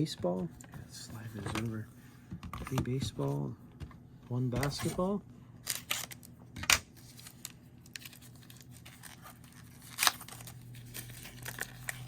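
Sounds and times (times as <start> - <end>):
cards and packaging crinkling: 5.6 - 12.0.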